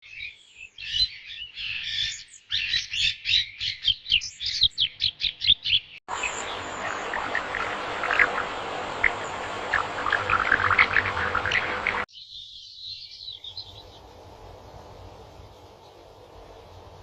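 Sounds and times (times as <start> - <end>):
bird chirping: 0.0 - 14.2
steady hiss: 6.1 - 12.1, 13.4 - 17.0.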